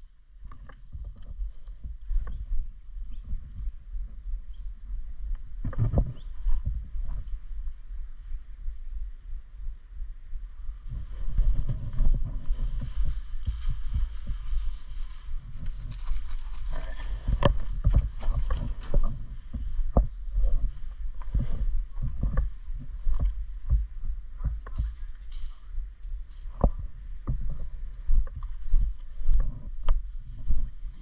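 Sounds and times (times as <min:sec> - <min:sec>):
handling thumps and knocks: 0:15.5 - 0:25.4.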